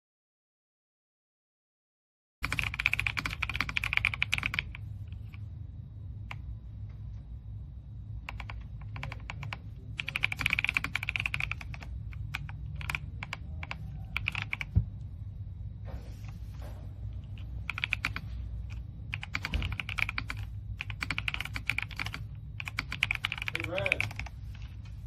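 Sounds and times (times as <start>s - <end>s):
typing on mechanical keyboard: 2.4s - 5.4s, 8.2s - 14.8s, 17.2s - 24.9s.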